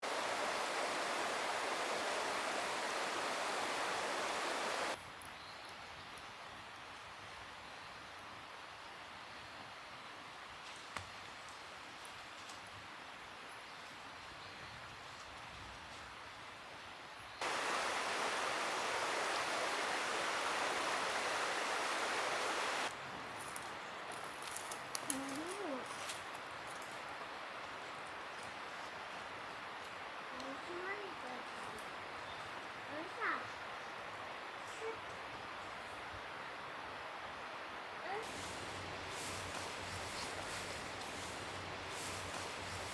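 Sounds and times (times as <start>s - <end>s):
flowing water rushing: 0.0s - 5.0s, 17.4s - 22.9s, 27.3s - 42.9s
outdoor hiss: 0.0s - 5.0s, 16.7s - 42.9s
steady rushing noise: 17.4s - 22.9s.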